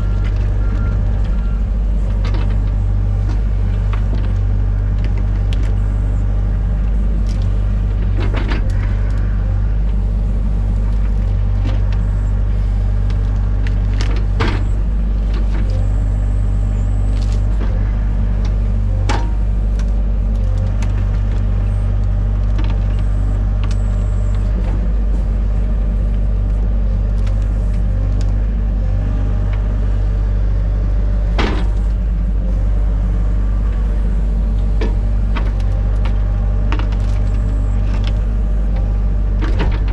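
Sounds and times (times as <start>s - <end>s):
excavator engine running: 0.0s - 39.9s
digging cracks and knocks: 13.0s - 16.0s, 16.9s - 28.6s, 31.2s - 32.4s, 34.5s - 39.9s.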